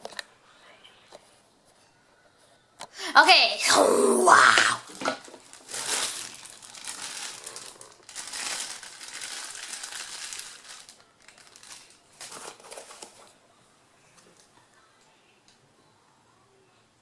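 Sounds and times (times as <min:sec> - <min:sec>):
packaging crinkling and rustling: 0:04.9 - 0:13.4.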